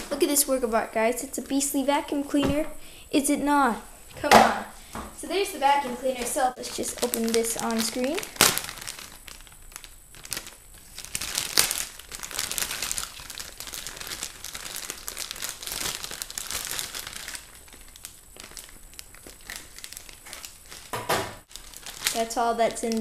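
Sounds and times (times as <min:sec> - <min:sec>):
plastic bag crinkling: 0:05.3 - 0:23.0.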